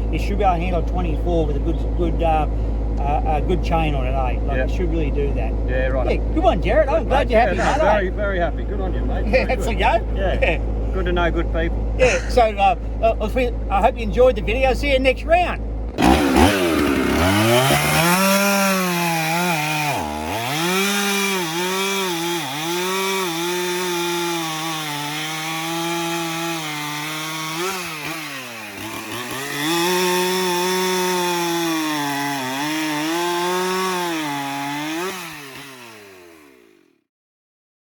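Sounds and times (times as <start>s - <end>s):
chainsaw cutting wood: 15.9s - 37.0s.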